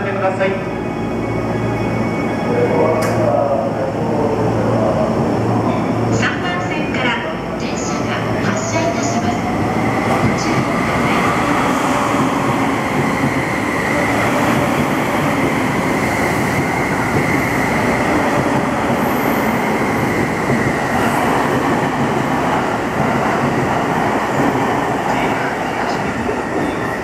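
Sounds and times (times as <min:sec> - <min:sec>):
train wheels rumbling on rail: 0:05.0 - 0:27.0.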